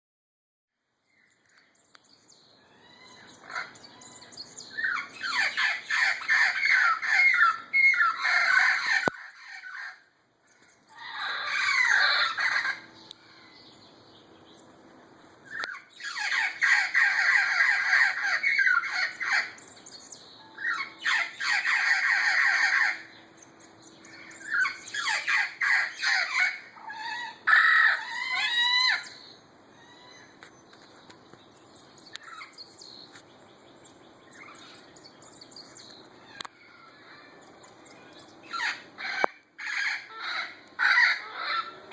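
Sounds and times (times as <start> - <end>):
distant parrot calls: 2.5 - 41.9
parrots screeching: 2.6 - 13.6, 15.4 - 19.6, 20.5 - 23.4, 24.2 - 30.5, 32.2 - 32.5, 36.1 - 41.9.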